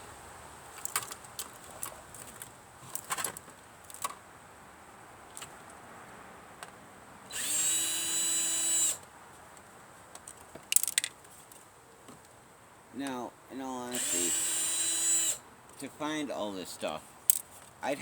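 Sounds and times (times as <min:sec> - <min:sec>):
power drill whine: 0:07.3 - 0:09.0, 0:13.9 - 0:15.4.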